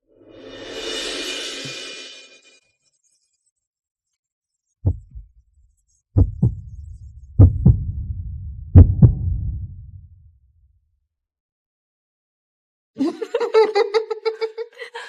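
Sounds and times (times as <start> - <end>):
heartbeat thumps: 4.8 - 5.4, 6.2 - 10.3
low rumble: 4.9 - 5.3, 6.2 - 10.4.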